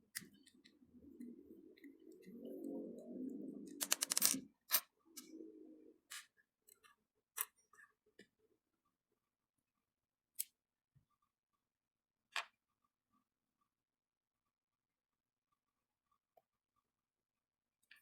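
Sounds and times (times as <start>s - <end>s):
reel parts clicking and rattling: 3.8s - 4.4s.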